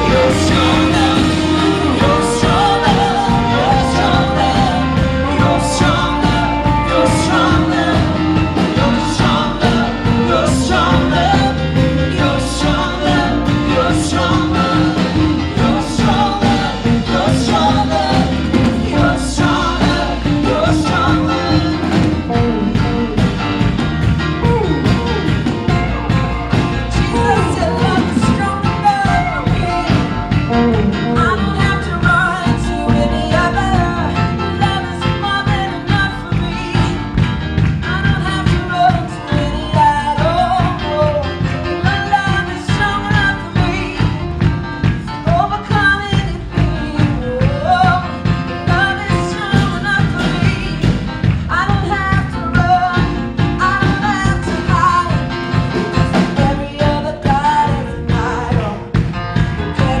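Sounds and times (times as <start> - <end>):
band playing worship music: 0.0 - 60.0
voices singing: 0.0 - 60.0.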